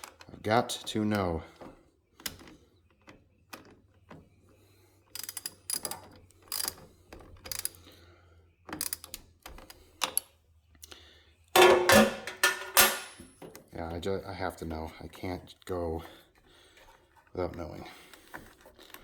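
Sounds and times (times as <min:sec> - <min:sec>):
hand tools clicking and rattling: 0:05.1 - 0:06.8, 0:08.7 - 0:10.2, 0:11.6 - 0:13.6
ringing metal clank: 0:11.6 - 0:13.2.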